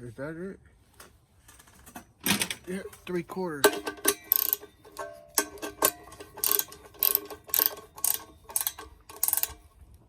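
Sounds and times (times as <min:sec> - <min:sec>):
socket ratchet clicking: 0:03.7 - 0:09.7.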